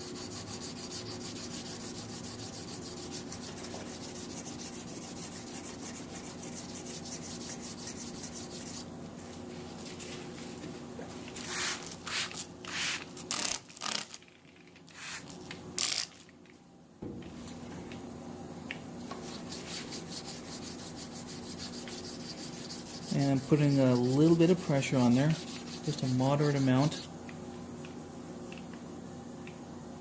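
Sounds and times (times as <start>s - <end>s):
sandpaper wet sanding strokes: 0.0s - 8.8s, 19.2s - 27.1s.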